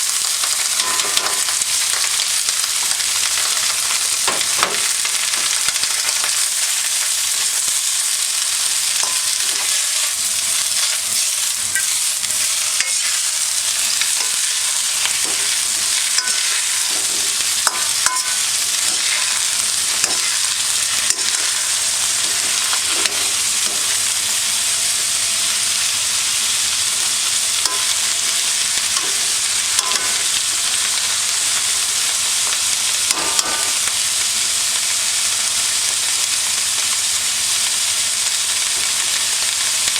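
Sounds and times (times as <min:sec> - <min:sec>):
stir-fry sizzling in a wok: 0:00.0 - 0:39.9
utensil scraping and clinking on wok: 0:00.6 - 0:02.0, 0:08.9 - 0:24.0, 0:27.6 - 0:28.2, 0:28.9 - 0:30.4.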